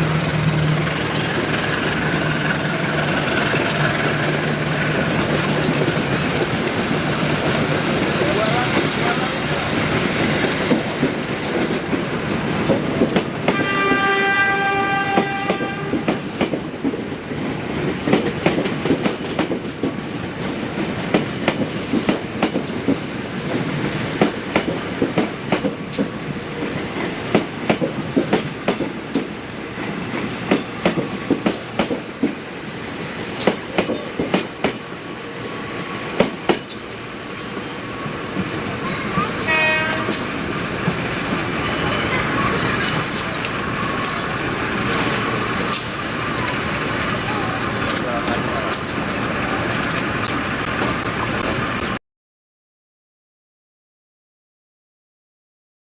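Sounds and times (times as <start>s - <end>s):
train rumble: 0.0s - 52.0s
train wheels clacking on rails: 0.1s - 32.6s, 33.2s - 35.0s, 35.8s - 52.0s
train horn: 13.5s - 16.2s, 38.6s - 40.4s.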